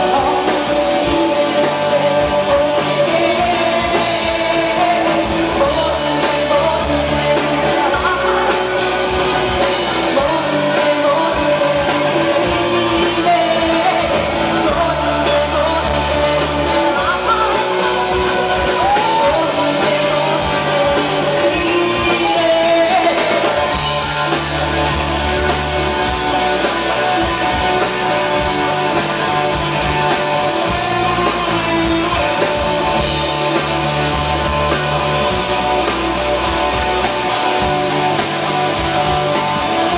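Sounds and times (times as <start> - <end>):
woman singing: 0.0 - 24.6
electric guitars and bass: 0.0 - 39.9.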